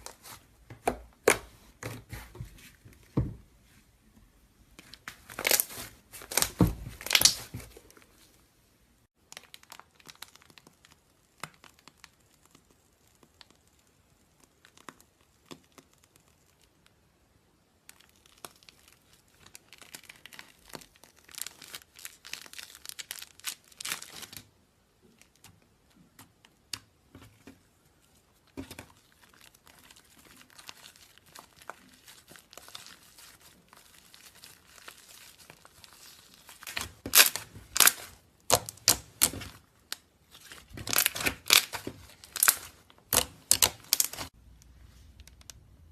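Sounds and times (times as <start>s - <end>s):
slime crackling: 4.9s - 8.2s, 28.1s - 44.4s.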